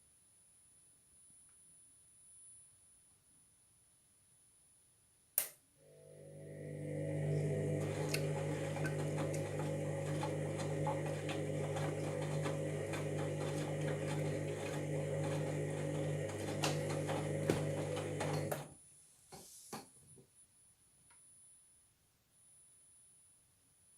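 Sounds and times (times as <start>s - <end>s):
washing machine drum humming: 6.0s - 18.7s.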